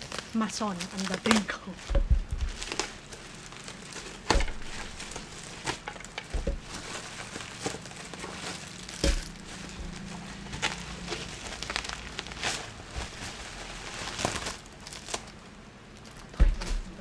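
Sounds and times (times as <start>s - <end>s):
packaging crinkling and rustling: 0.0s - 17.0s
dull knocks: 1.2s - 12.0s, 16.3s - 17.0s.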